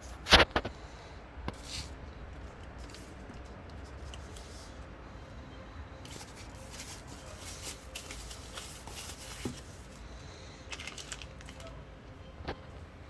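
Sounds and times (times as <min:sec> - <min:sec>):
packaging rustling and scraping: 0:01.5 - 0:04.8, 0:06.0 - 0:11.7.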